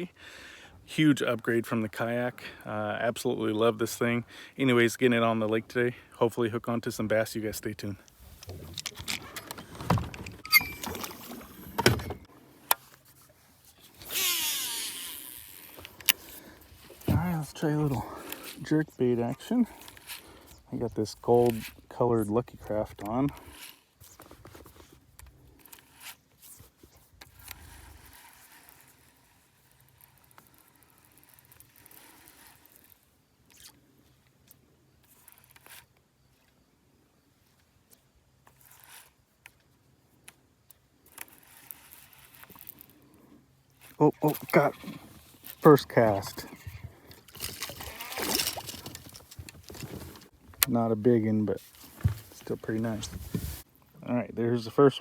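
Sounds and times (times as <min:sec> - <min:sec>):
fishing gear clicks and knocks: 0:07.7 - 0:36.6, 0:37.4 - 0:53.7
fishing cast rushing hiss: 0:13.9 - 0:16.4
fishing reel spool whirring: 0:14.0 - 0:16.7, 0:27.2 - 0:33.8, 0:35.0 - 0:36.4, 0:41.0 - 0:43.2, 0:43.8 - 0:49.9.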